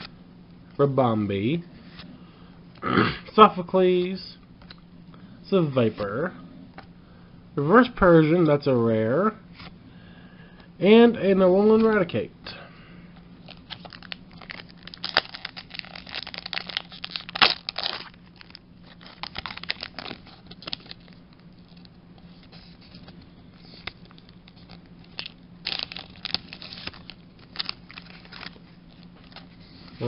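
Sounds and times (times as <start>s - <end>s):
faint low hum: 0.0s - 30.0s
foil wrapper tearing and crinkling: 13.4s - 21.9s, 23.6s - 29.4s.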